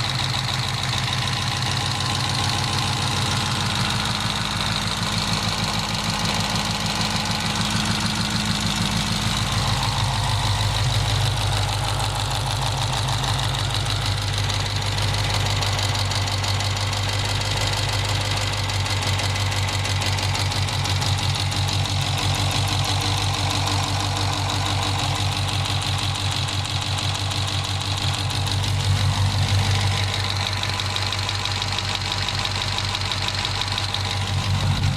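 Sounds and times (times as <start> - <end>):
engine idling: 0.0 - 34.9
valvetrain ticking: 0.0 - 34.9.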